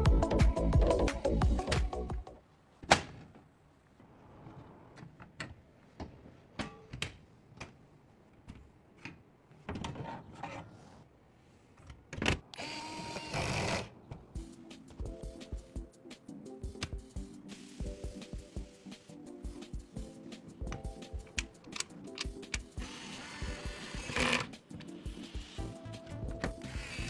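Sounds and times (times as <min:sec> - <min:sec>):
whirring: 0:12.5 - 0:14.0, 0:26.4 - 0:27.0
clicks of hardware being handled: 0:20.6 - 0:22.8.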